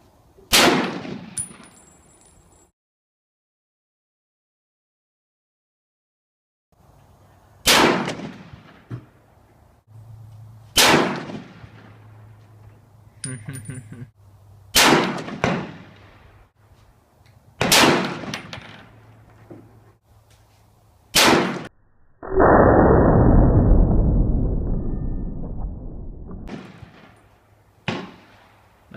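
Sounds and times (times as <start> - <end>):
gunshots with ringing echo: 0.5 - 1.8, 7.6 - 8.8, 10.8 - 11.9, 14.7 - 16.1, 17.6 - 18.8, 21.2 - 21.7.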